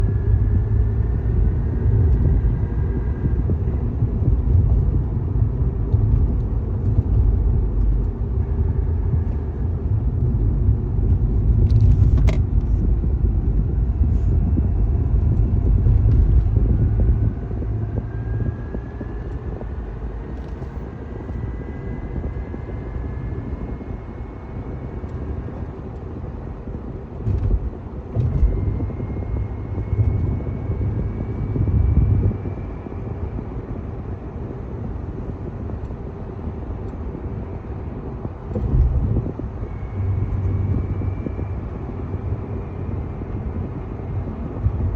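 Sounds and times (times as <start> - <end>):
faint engine whine: 0.0 - 44.9
car engine accelerating: 27.2 - 33.1.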